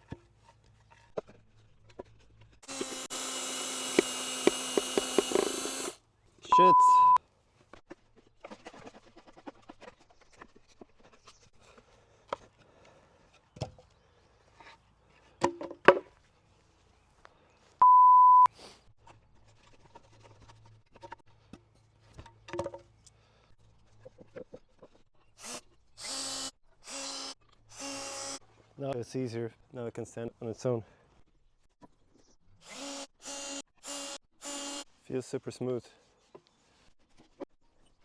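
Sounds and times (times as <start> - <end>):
cordless drill running: 2.6 - 6.0, 25.4 - 28.4, 32.6 - 34.9
censor bleep: 6.5 - 7.2, 17.8 - 18.5.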